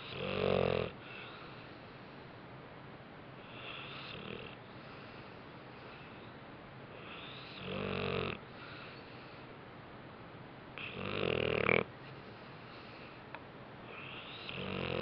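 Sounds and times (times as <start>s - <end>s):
dog snoring: 0.0s - 1.4s, 3.4s - 5.1s, 7.0s - 8.8s, 10.8s - 11.9s, 13.8s - 15.0s
dog breathing softly: 3.4s - 6.3s, 6.9s - 7.7s, 11.6s - 14.6s.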